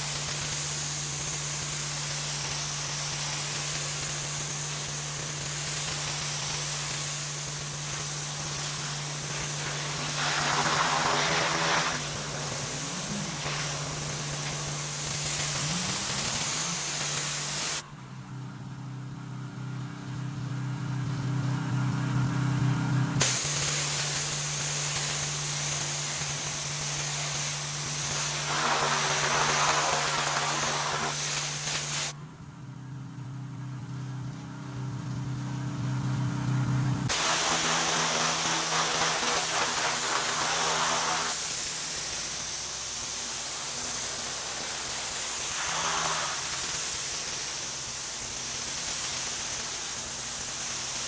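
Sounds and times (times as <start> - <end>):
water spray hissing on concrete: 0.0 - 17.8, 23.2 - 32.2, 37.1 - 51.0
pressure washer engine hum: 0.0 - 17.9, 23.2 - 32.2, 37.1 - 51.0.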